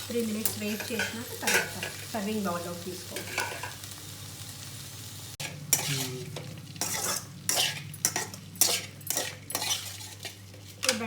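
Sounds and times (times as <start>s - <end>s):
oil sizzling: 0.0s - 11.0s
utensil scraping a pan: 5.4s - 11.0s.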